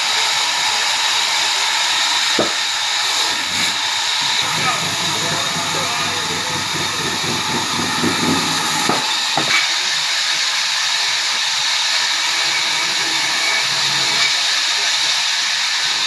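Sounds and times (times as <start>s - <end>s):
sawmill machinery running: 0.0s - 16.0s
sharp knocks: 2.4s - 2.6s.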